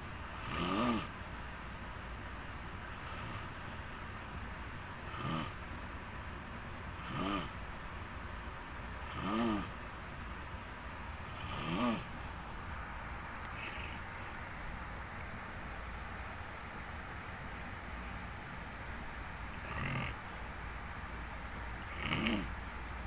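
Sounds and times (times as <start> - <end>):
steady background hiss: 0.0 - 23.0
person snoring: 0.4 - 1.1, 3.0 - 3.5, 5.0 - 5.6, 7.0 - 7.6, 9.0 - 9.7, 11.3 - 12.1, 13.6 - 14.0, 19.6 - 20.2, 21.9 - 22.6.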